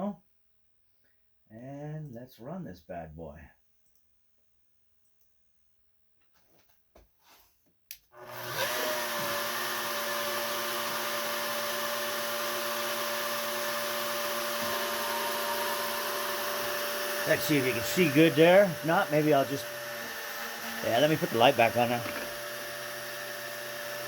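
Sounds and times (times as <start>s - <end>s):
router spindle motor whining: 8.2s - 24.0s.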